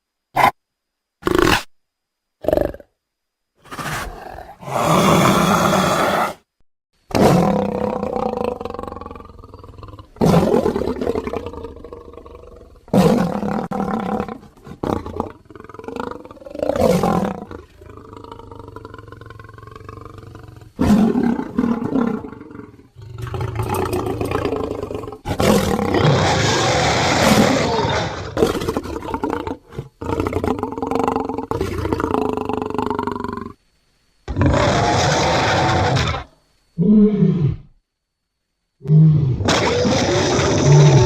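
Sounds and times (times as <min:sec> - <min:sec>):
creature roars: 0:03.6 - 0:06.4, 0:25.3 - 0:30.6, 0:34.3 - 0:37.7, 0:38.8 - 0:41.0.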